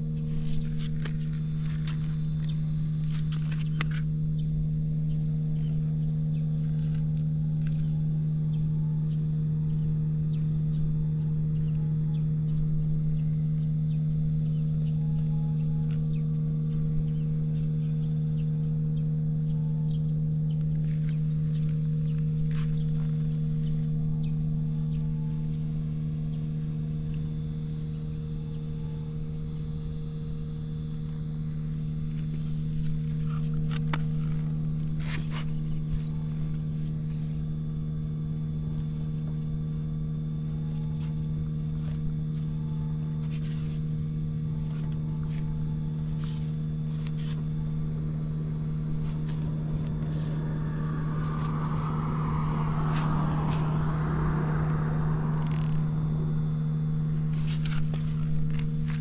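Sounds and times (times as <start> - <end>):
motorcycle engine idling: 0.0 - 59.0.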